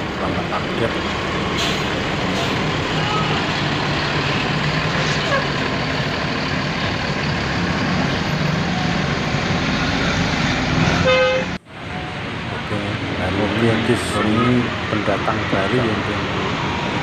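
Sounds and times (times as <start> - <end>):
vehicle engine running: 0.0 - 11.7
road traffic noise: 0.0 - 17.0.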